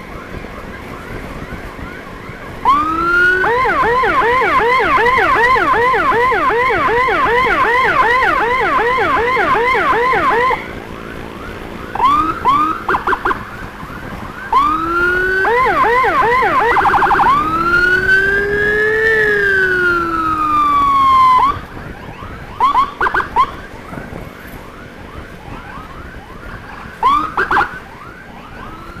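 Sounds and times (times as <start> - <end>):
electronic emergency siren: 0.0 - 29.0
traffic noise: 0.0 - 29.0
short siren chirps: 14.6 - 21.6.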